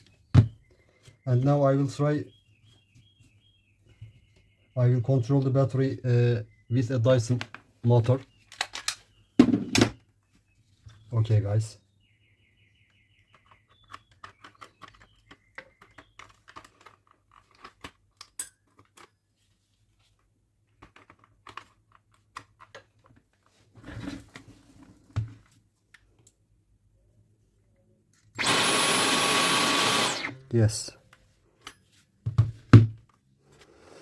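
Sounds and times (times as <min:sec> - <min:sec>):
motor whirring: 0:28.4 - 0:30.5.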